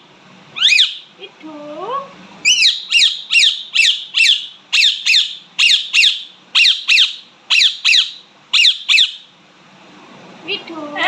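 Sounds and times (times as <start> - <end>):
parrot chirping shrilly: 0.6 - 1.1, 2.4 - 9.3.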